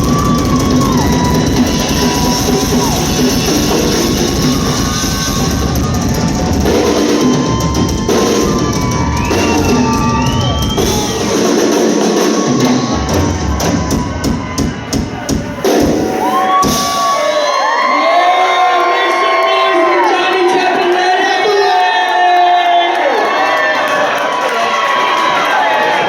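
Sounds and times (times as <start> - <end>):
kick and snare drums: 0.0 - 17.1
live band playing loudly: 0.0 - 17.9.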